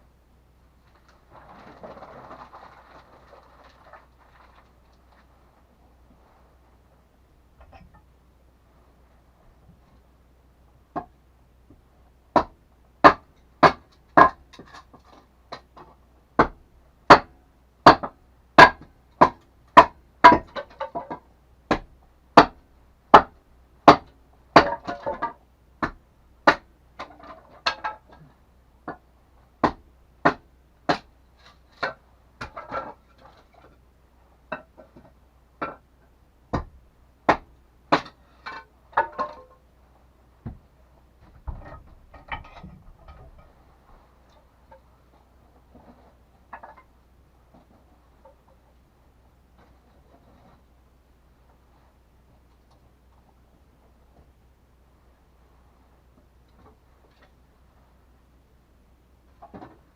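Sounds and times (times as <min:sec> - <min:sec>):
hammering on wood: 0:12.3 - 0:14.7, 0:16.4 - 0:26.7, 0:29.6 - 0:31.1, 0:36.5 - 0:38.2.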